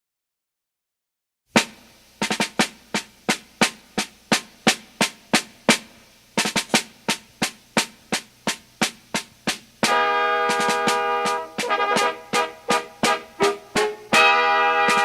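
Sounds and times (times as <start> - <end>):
snare drum cadence: 1.6 - 15.0.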